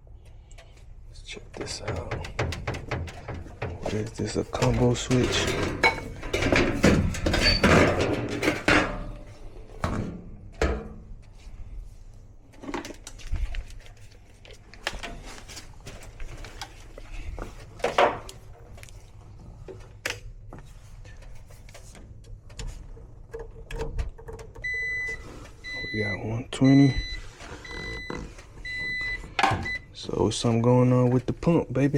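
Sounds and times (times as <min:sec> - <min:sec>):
tools clicking and knocking: 0:01.5 - 0:09.0.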